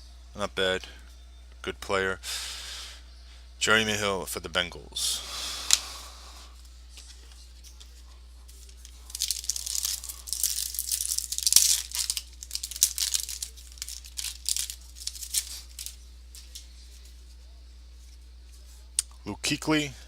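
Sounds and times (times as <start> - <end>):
foil wrapper tearing and crinkling: 8.6 - 16.6.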